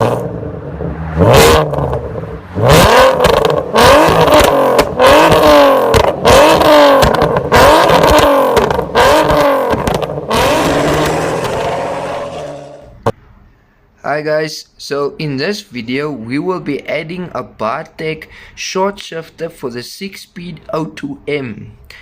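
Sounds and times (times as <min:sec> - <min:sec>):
car engine revving: 0:00.0 - 0:13.1.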